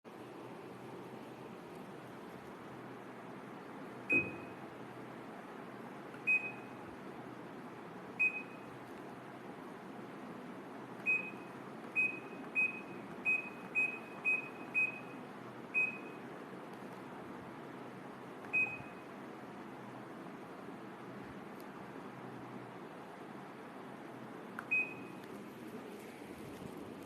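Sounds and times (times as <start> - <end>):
washing machine control panel beeps: 4.1 - 4.6, 6.1 - 6.8, 8.2 - 8.7, 11.0 - 16.2, 18.4 - 19.1, 24.6 - 25.2.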